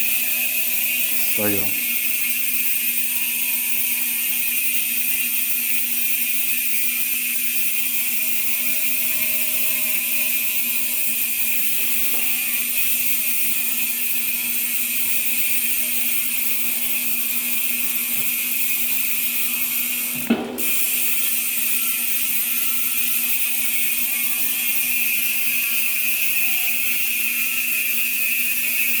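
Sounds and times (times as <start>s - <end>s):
bicycle hub ratcheting buzz: 0.0s - 29.0s
sharp knock: 20.2s - 20.8s.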